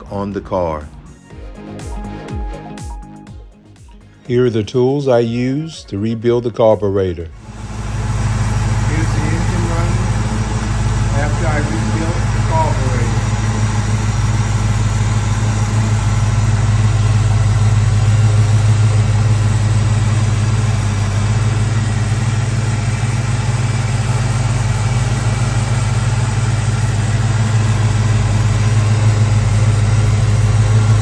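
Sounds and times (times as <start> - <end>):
car engine idling: 7.4 - 31.0.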